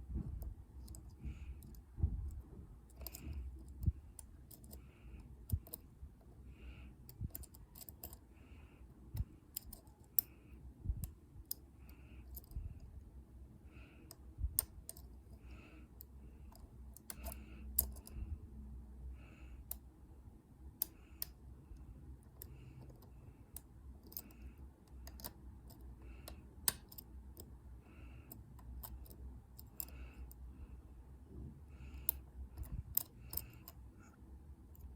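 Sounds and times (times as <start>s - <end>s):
pick scraping lock pins: 0.3s - 13.0s, 13.9s - 18.3s, 20.8s - 30.5s, 31.8s - 34.9s
lock pick clicking in lock: 0.8s - 5.9s, 7.1s - 8.2s, 9.2s - 10.3s, 16.5s - 18.2s, 22.3s - 27.5s.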